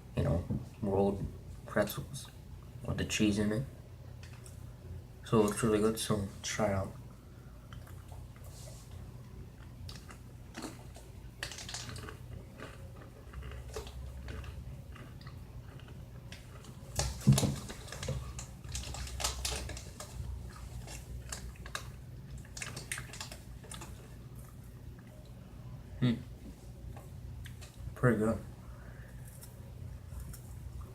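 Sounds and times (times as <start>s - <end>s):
crunchy snacks being chewed: 9.6s - 24.6s.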